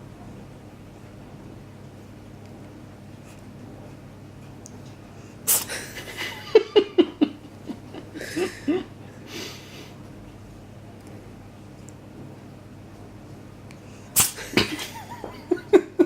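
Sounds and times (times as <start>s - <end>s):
cat sneezing: 5.5s - 6.0s, 14.2s - 15.0s
person laughing: 5.7s - 9.8s, 14.4s - 16.0s.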